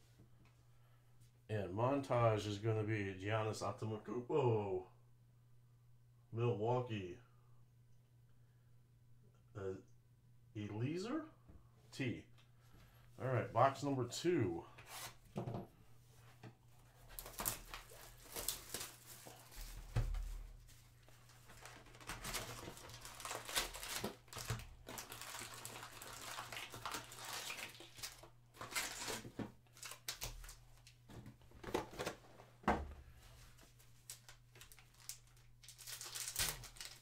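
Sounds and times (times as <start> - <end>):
plastic wrapping tearing and crinkling: 17.0 - 19.8, 21.1 - 31.0, 34.0 - 37.0.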